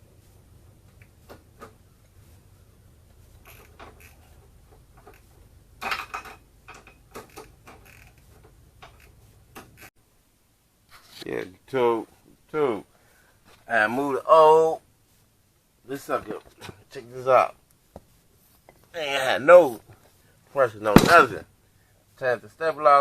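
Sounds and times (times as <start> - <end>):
faint low hum: 0.0 - 23.0.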